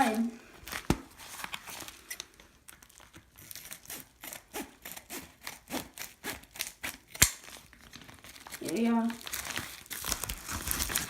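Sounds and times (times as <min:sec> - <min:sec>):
package being sawed open: 0:02.8 - 0:08.6, 0:09.2 - 0:11.0.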